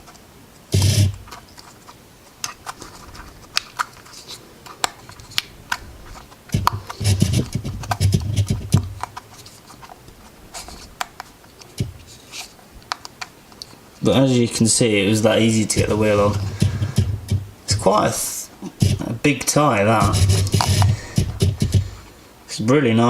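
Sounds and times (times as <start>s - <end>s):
small clicks and scratches: 0.0s - 14.0s, 18.7s - 19.1s, 20.0s - 22.0s
rubbing and handling sounds: 0.0s - 22.4s.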